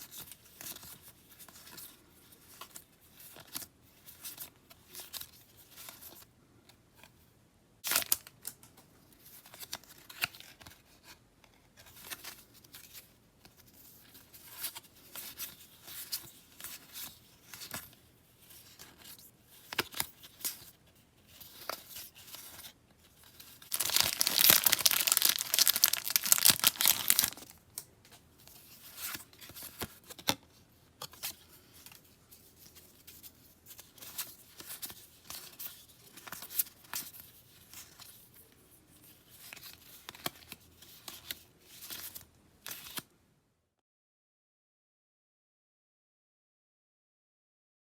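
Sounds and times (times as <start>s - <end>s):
packaging tearing open: 23.7s - 27.5s
packaging crinkling: 23.7s - 27.6s.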